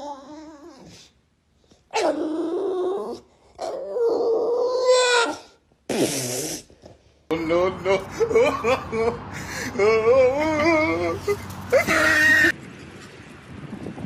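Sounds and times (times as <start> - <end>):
dog whining: 0.0 - 1.1, 1.9 - 5.6.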